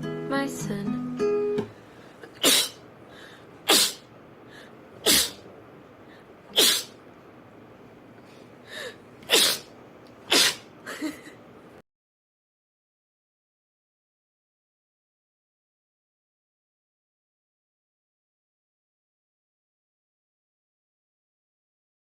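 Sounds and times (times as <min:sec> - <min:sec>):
girl sneezing: 0:02.4 - 0:02.8, 0:03.7 - 0:04.1, 0:05.0 - 0:05.4, 0:06.5 - 0:07.0, 0:09.3 - 0:09.7, 0:10.3 - 0:10.7.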